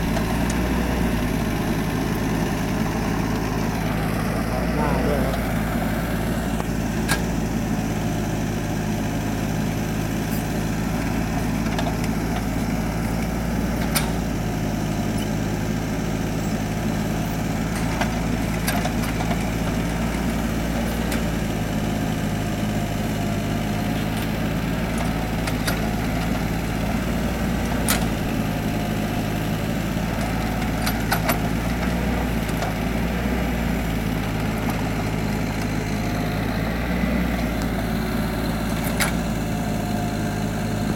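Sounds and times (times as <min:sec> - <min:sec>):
diesel engine running: 0:00.0 - 0:40.9
excavator digging soil: 0:00.0 - 0:40.9.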